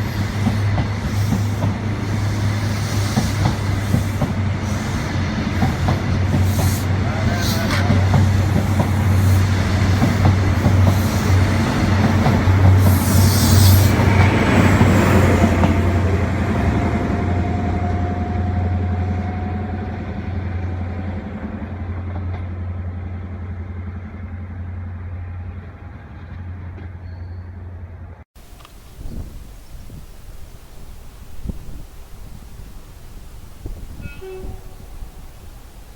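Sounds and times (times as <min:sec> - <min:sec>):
train passing: 0:00.0 - 0:28.6.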